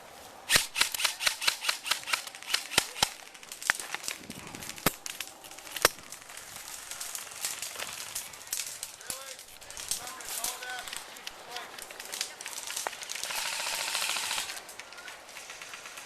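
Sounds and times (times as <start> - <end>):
airsoft gun shots: 0.5 - 3.2.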